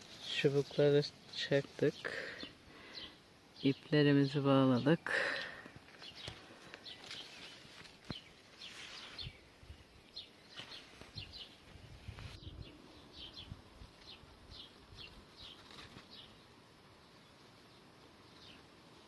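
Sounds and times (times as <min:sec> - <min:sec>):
small bird chirping: 0:05.9 - 0:16.5.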